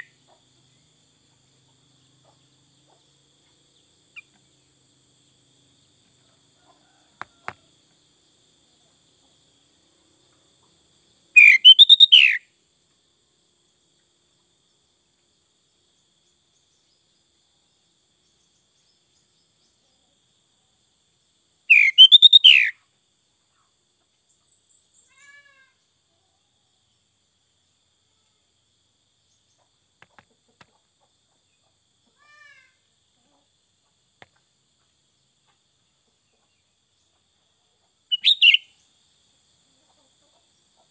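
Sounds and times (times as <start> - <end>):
bird singing: 0.0 - 4.7, 11.3 - 12.5, 21.7 - 22.8, 38.0 - 38.9
faint bird chirps: 0.0 - 4.7, 10.6 - 12.6, 21.7 - 26.7, 35.4 - 39.0.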